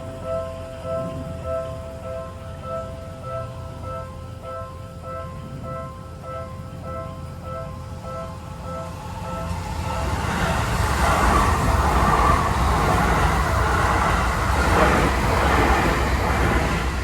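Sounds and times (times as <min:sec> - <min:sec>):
crossing warning bell ringing: 0:00.0 - 0:17.0
train wheels rushing on rail: 0:07.3 - 0:17.0.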